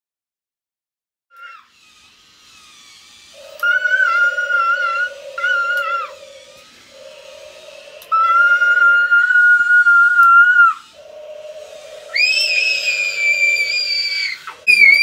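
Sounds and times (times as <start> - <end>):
toy motor and gearbox whirring: 1.4 - 15.0
high-pitched whistle-like shrieks: 3.1 - 15.0.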